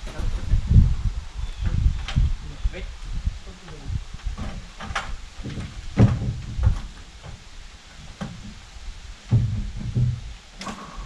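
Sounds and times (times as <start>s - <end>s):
low rumble: 0.0s - 6.9s
wooden knocks and clunks: 3.6s - 8.6s, 9.2s - 11.0s.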